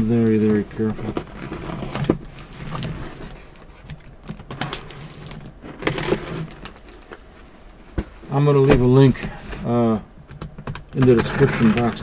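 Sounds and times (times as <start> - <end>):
loud rustling of packaging: 0.4 - 8.2
packaging clicks and crinkles: 1.2 - 7.2.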